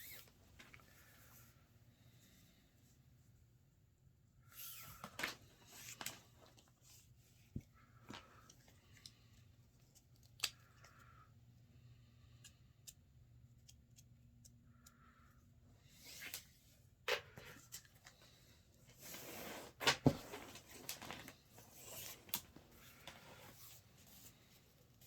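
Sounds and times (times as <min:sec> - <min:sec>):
cord rustling and sliding: 0:04.5 - 0:09.1, 0:15.9 - 0:25.0.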